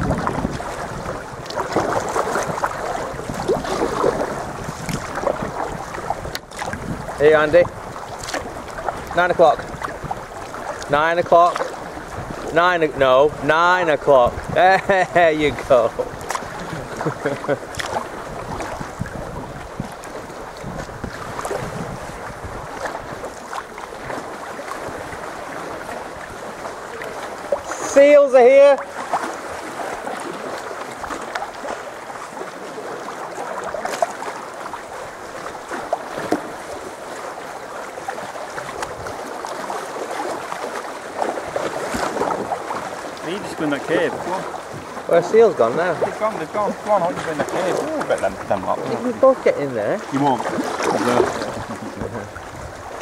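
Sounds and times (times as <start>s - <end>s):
wind noise on microphone: 0.0s - 11.0s, 11.6s - 27.8s, 38.6s - 39.3s, 50.1s - 53.0s
water splashing against kayak: 0.0s - 53.0s.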